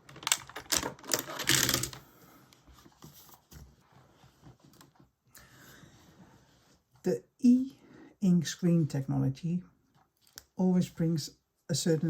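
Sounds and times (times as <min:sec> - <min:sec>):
typewriter keys clicking: 0:00.1 - 0:02.0.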